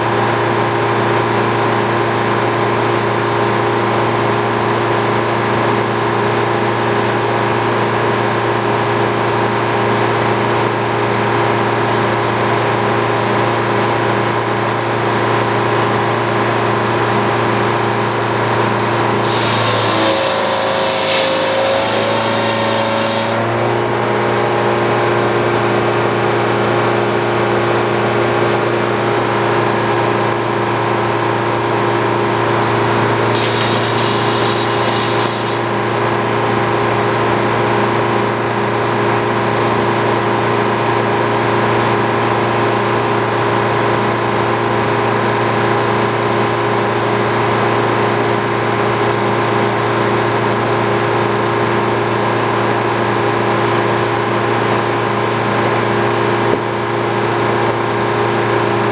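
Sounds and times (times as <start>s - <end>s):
sawmill running: 19.0s - 23.8s, 32.8s - 36.0s.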